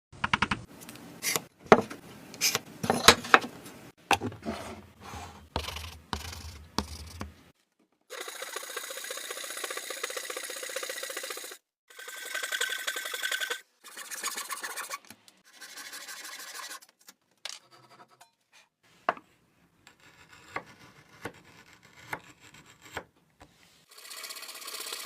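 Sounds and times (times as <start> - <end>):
scratching rasp on wood: 12.0 - 16.8.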